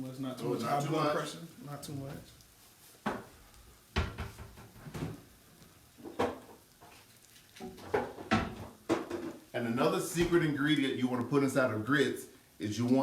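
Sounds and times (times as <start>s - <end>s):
kitchen knocks and clicks: 3.9s - 5.2s, 6.0s - 7.0s, 7.6s - 9.4s.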